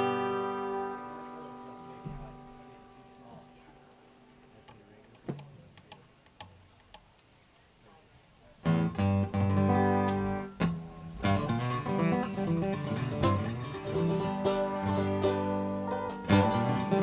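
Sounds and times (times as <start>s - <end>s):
bluegrass string band playing: 0.0s - 3.7s, 8.7s - 17.0s
strummed acoustic guitar: 0.0s - 5.4s, 8.6s - 17.0s
plucked notes: 0.0s - 5.5s, 8.6s - 17.0s.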